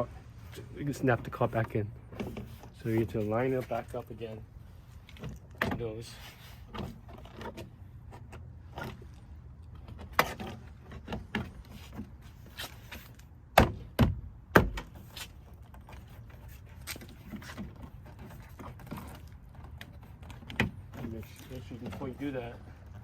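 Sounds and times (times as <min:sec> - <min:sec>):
loud plastic knocks: 0:13.5 - 0:15.0.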